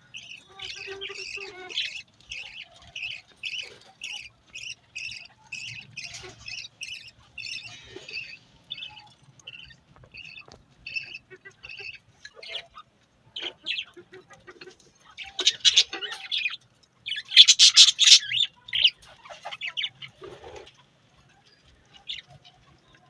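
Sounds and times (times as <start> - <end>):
budgerigars squawking and chirping: 0.1 - 12.8, 15.2 - 20.6.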